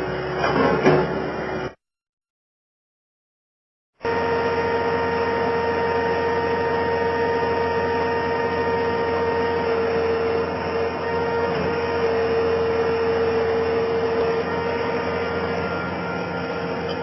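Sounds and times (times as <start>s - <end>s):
constant whining tone: 4.0s - 17.0s
skid steer loader engine running: 4.0s - 17.0s.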